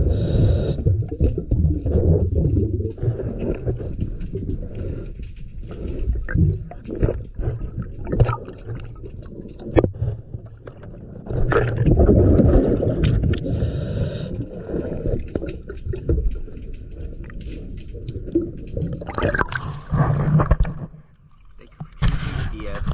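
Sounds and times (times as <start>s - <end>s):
underwater bubbles gurgling: 0.0s - 5.0s, 5.8s - 22.9s.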